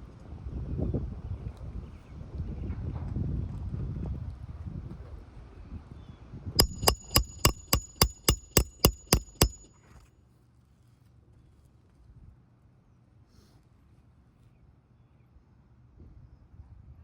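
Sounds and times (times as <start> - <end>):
hammer tapping a nail: 6.6 - 9.7.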